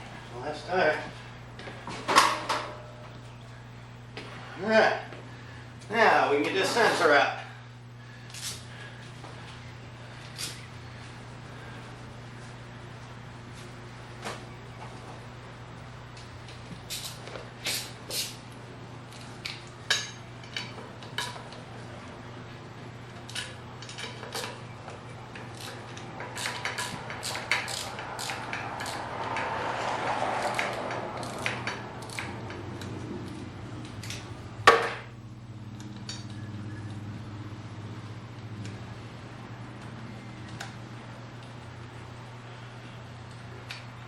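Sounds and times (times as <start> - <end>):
metal tools clinking on wheel: 25.3 - 29.6
rough rubbing noise: 27.1 - 32.5.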